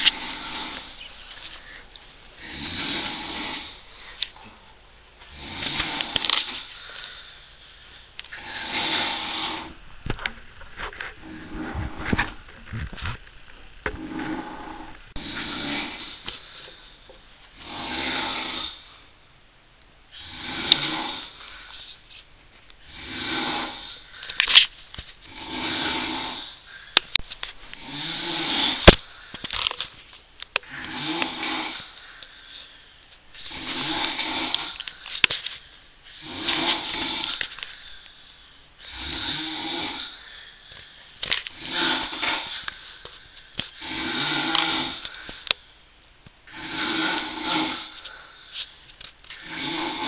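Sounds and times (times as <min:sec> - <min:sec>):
man snoring loudly: 0:00.1 - 0:01.0, 0:02.4 - 0:03.8, 0:05.3 - 0:06.2, 0:08.4 - 0:09.8, 0:14.0 - 0:16.2, 0:17.6 - 0:18.8, 0:20.2 - 0:21.4, 0:22.9 - 0:24.0, 0:25.3 - 0:26.6, 0:27.8 - 0:28.9, 0:30.7 - 0:32.0, 0:33.4 - 0:34.8, 0:36.2 - 0:37.4, 0:38.8 - 0:40.2, 0:41.6 - 0:42.6, 0:43.8 - 0:45.0, 0:46.5 - 0:48.0, 0:49.4 - 0:50.0.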